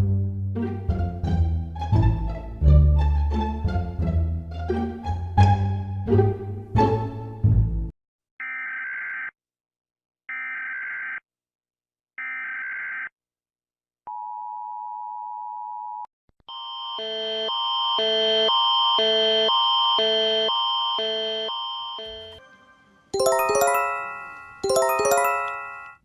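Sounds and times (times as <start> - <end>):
alternating electronic alarm tone: 16.5 - 22.4.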